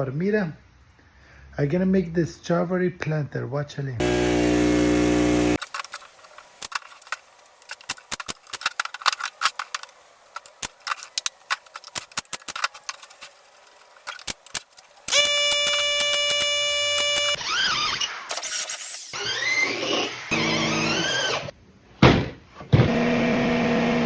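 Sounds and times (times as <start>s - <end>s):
loud steady pitched tone: 4.0s - 5.6s.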